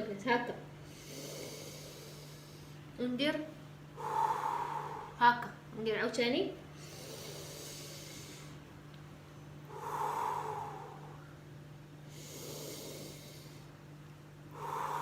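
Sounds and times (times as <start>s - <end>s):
faint steady hum: 0.0s - 15.0s
woman breathing deeply: 0.8s - 2.9s, 3.9s - 5.2s, 6.7s - 8.7s, 9.6s - 11.4s, 12.0s - 13.8s, 14.4s - 15.0s.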